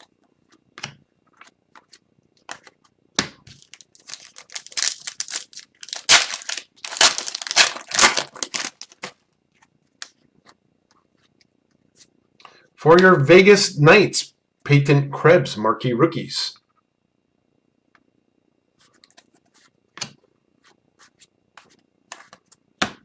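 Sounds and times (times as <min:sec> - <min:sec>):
foil wrapper crinkling and tearing: 0:03.5 - 0:09.2.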